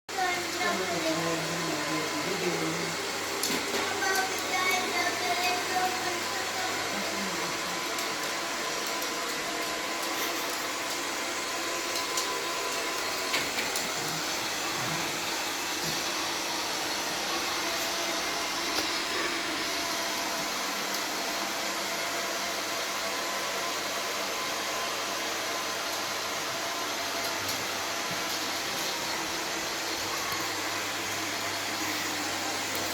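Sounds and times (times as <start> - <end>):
robot vacuum cleaner whirring: 0.1 - 32.9.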